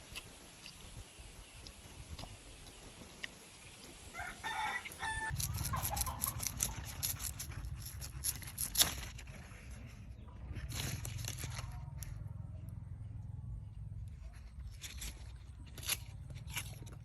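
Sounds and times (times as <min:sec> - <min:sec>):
chicken calling: 0:04.2 - 0:06.8
sharp clicks and crackles: 0:05.3 - 0:09.4, 0:10.6 - 0:12.7.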